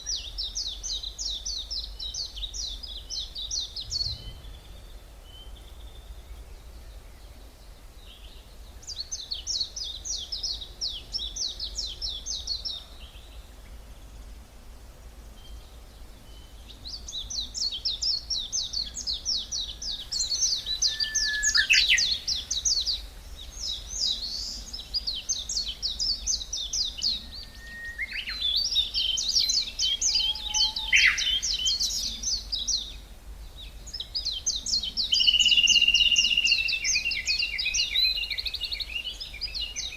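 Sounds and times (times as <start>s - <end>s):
low background rumble: 0.0s - 9.1s
songbirds singing: 0.0s - 39.9s.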